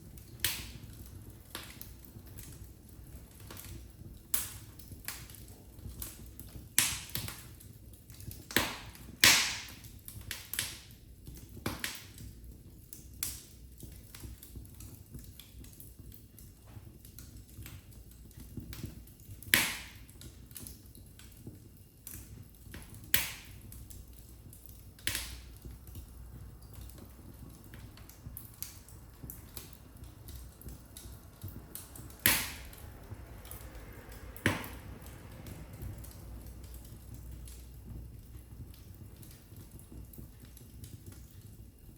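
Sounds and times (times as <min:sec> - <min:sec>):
wood fire crackling: 0:00.0 - 0:41.9.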